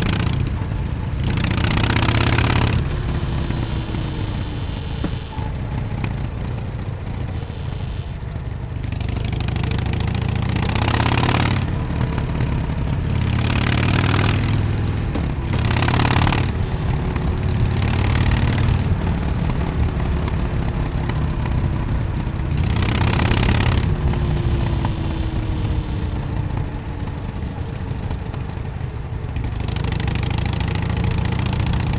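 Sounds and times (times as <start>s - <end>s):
motorcycle exhaust running: 0.0s - 31.9s
rushing noise: 10.5s - 28.5s.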